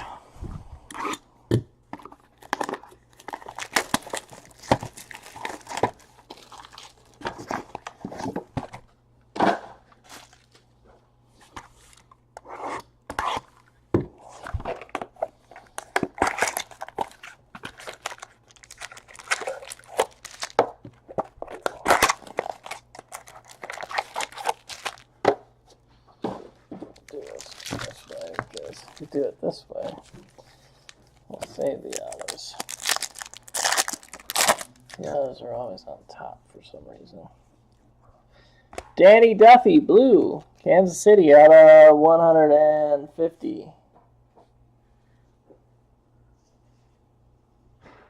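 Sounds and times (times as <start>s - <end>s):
foil wrappers crinkling and tearing: 2.4s - 7.9s, 15.6s - 25.1s, 26.9s - 35.1s
cards clicking and rustling: 14.7s - 25.1s, 26.9s - 35.0s.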